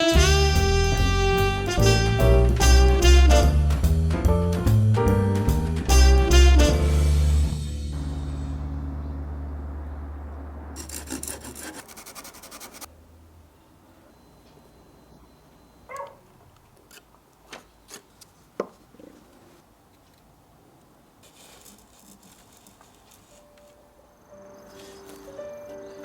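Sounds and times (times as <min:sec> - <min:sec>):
low music tone: 0:00.0 - 0:10.8
rapid scratchy scraping: 0:10.8 - 0:12.9.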